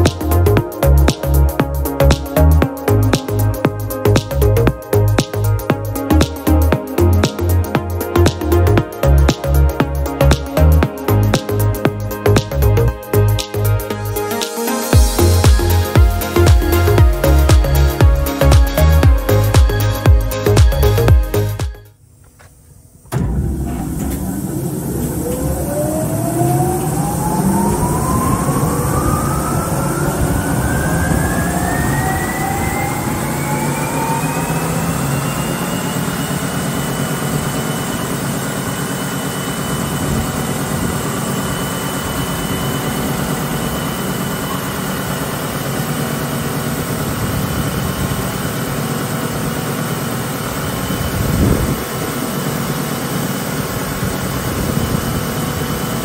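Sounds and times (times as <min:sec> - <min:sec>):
machine drone: 0:00.0 - 0:56.0
belt sander motor whine: 0:22.8 - 0:56.0.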